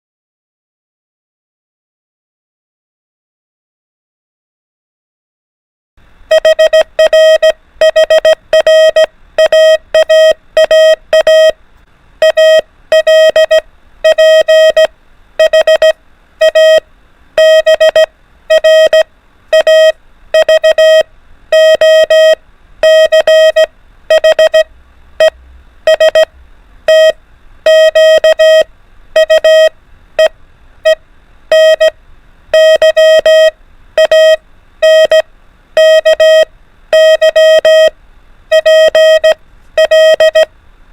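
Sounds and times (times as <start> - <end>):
morse code beeps: 6.3 - 11.6, 12.2 - 16.8, 17.4 - 26.3, 26.9 - 32.0, 32.6 - 35.2, 35.8 - 37.9, 38.5 - 40.5.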